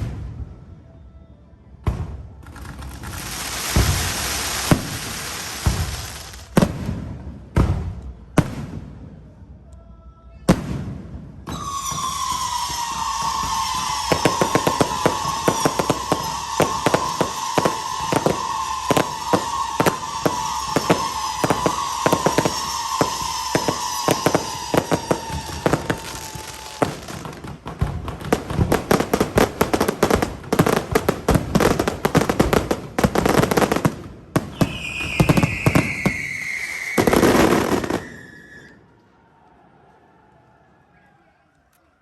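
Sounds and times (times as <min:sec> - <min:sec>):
fireworks booms: 0:00.0 - 0:00.7, 0:01.8 - 0:09.3, 0:10.5 - 0:38.8
falling whistling tone: 0:11.5 - 0:27.2, 0:34.4 - 0:39.0.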